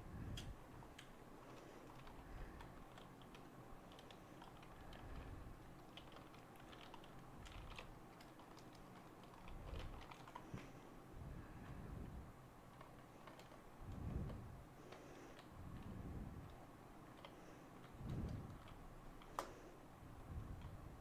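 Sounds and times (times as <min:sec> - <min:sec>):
keyboard keys clicking: 0:01.8 - 0:05.2, 0:05.8 - 0:10.7, 0:12.7 - 0:13.7.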